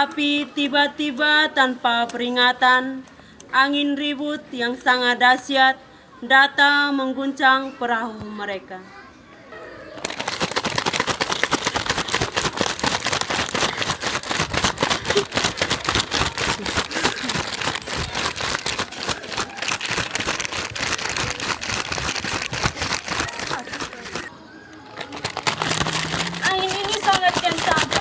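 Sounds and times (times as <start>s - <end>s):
dense crackling and rustling noise: 10.0s - 24.3s, 25.0s - 28.0s.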